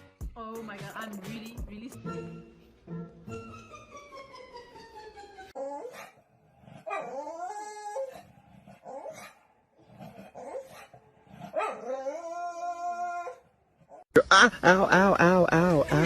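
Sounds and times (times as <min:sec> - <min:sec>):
dog whining and howling: 0:05.6 - 0:09.4, 0:10.0 - 0:14.0.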